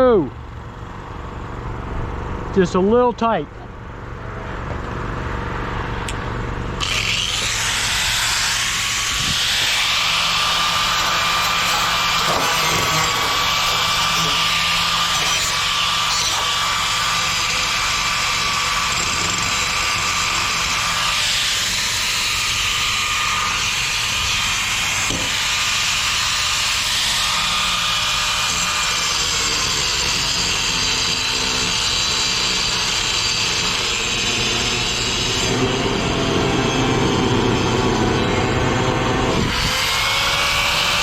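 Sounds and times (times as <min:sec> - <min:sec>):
engine running steadily: 0:00.0 - 0:11.1, 0:34.1 - 0:41.0.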